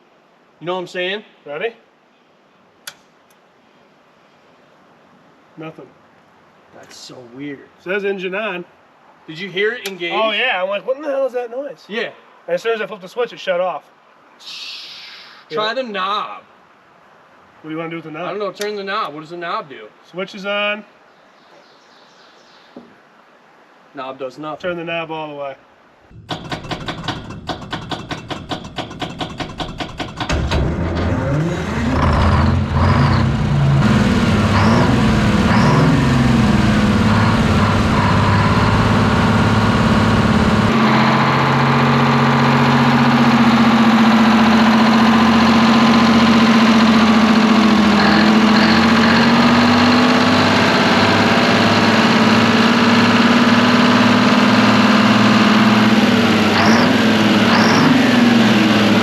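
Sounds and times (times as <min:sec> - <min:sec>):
diesel engine cranking and running: 0:26.2 - 0:59.0.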